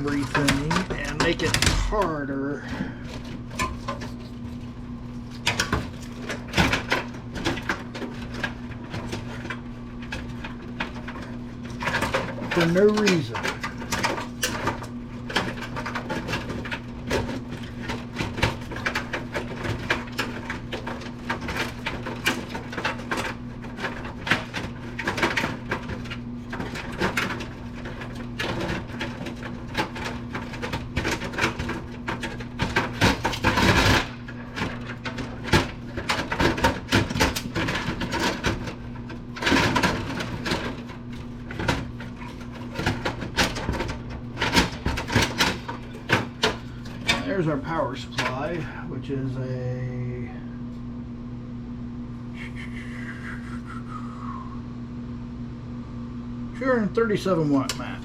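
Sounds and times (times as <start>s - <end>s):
scraping: 0.0s - 4.7s
clicks knocks and rattles of parts: 0.0s - 48.7s
low hum: 49.7s - 56.6s.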